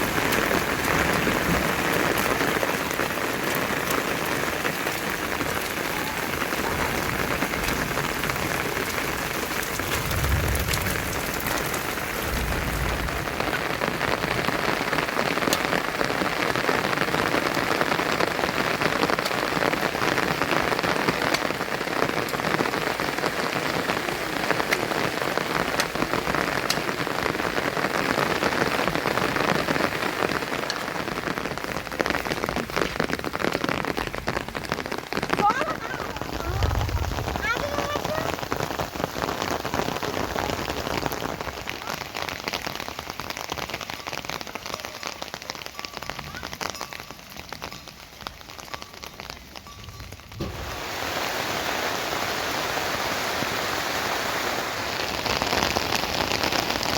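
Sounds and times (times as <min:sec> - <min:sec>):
raindrops ticking: 0:00.0 - 0:51.5, 0:54.9 - 0:56.9
heavy rain falling: 0:00.0 - 0:56.9
low rumbles: 0:03.4 - 0:15.1, 0:35.2 - 0:39.0.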